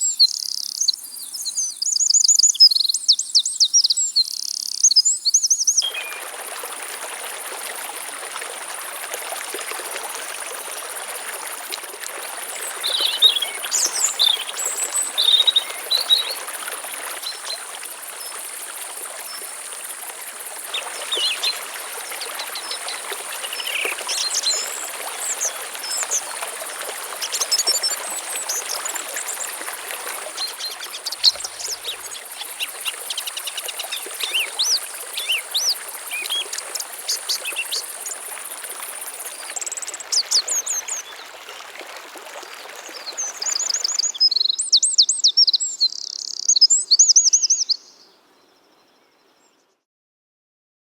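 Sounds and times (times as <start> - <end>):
small birds chirping: 0.0 - 6.3, 12.5 - 18.4, 20.5 - 38.4, 42.9 - 48.0
stream flowing: 5.8 - 45.2.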